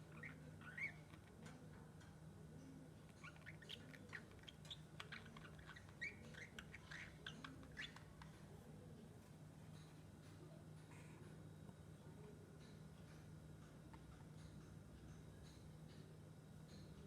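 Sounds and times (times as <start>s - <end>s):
lovebird chirping: 0.0s - 1.2s, 3.1s - 8.2s
faint low hum: 0.0s - 17.0s.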